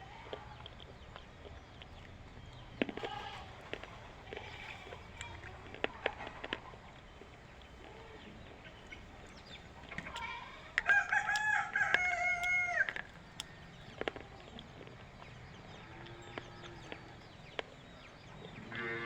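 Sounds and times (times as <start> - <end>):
rooster crowing: 10.8 - 13.1.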